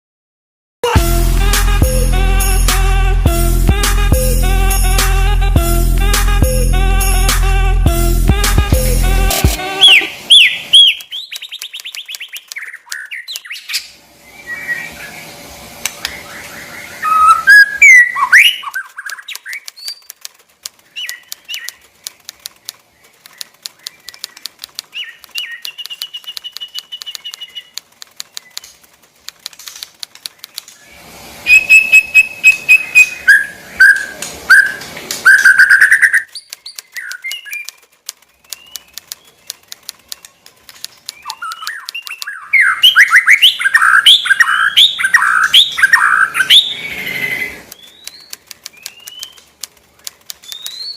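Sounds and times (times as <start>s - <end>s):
bird clicks and short calls: 9.3s - 14.0s, 15.9s - 30.9s, 31.5s - 50.9s
bird singing whistled phrases: 9.8s - 14.9s, 16.1s - 20.1s, 24.9s - 27.7s, 31.5s - 37.8s, 41.2s - 49.4s, 50.4s - 50.9s.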